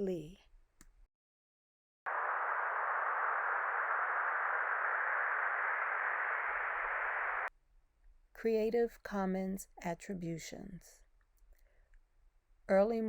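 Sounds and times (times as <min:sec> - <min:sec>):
steady hiss: 0:02.1 - 0:07.5.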